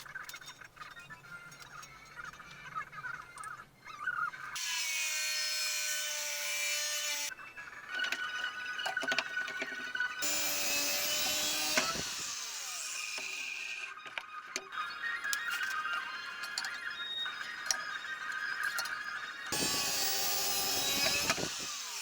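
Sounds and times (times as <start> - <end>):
repeated sawing strokes: 4.6 - 7.3, 10.2 - 13.8, 19.5 - 22.0
saw cutting steel tubing: 4.6 - 7.3, 10.2 - 13.9, 18.6 - 22.0.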